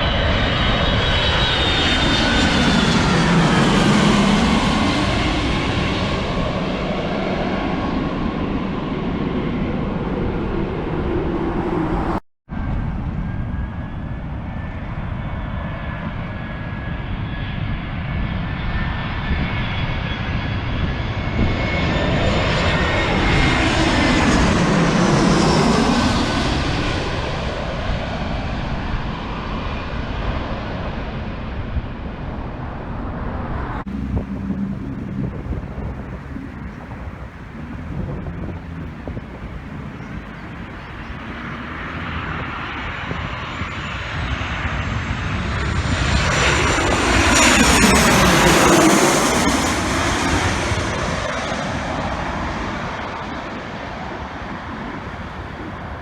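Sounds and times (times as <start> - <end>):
jet airliner passing overhead: 0.0 - 56.0
wind buffeting microphone: 0.1 - 12.2, 33.8 - 56.0.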